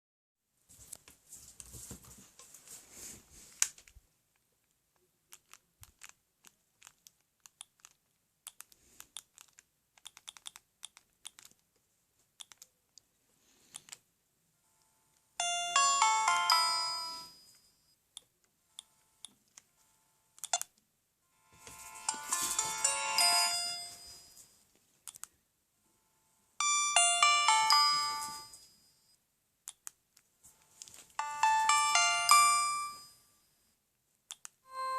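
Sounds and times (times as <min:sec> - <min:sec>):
polyphonic ringtone melody: 0:15.4 - 0:17.7, 0:21.3 - 0:24.6, 0:26.6 - 0:28.9, 0:31.1 - 0:33.2, 0:34.7 - 0:34.9.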